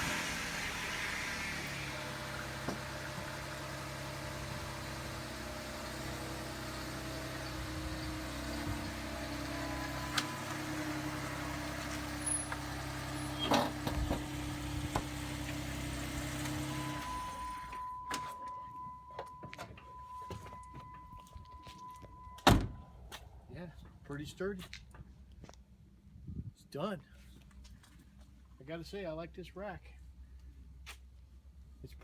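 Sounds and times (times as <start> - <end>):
vehicle engine idling: 0.0 - 24.4.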